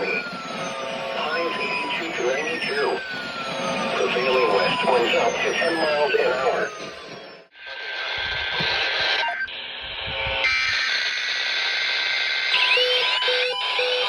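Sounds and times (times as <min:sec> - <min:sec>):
two-tone beeping alarm: 0:00.0 - 0:07.5, 0:12.4 - 0:14.0
raspy hissing radio signal: 0:07.6 - 0:12.5.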